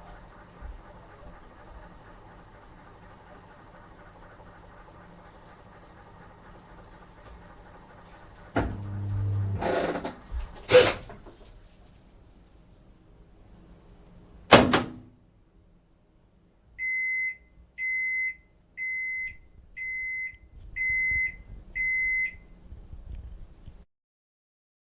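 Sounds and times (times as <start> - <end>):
washing machine clunk: 8.5 - 9.0, 14.5 - 15.1.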